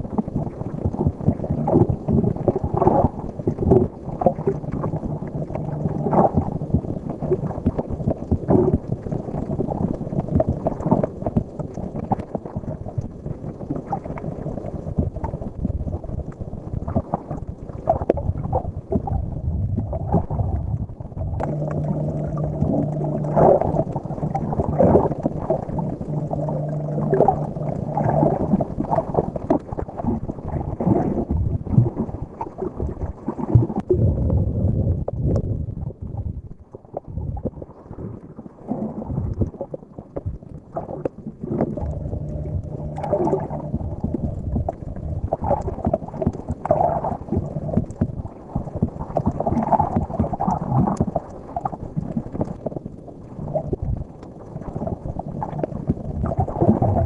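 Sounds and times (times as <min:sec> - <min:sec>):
water sloshing underwater: 0:00.0 - 0:57.0
steady low hum: 0:19.4 - 0:29.4, 0:41.4 - 0:47.9.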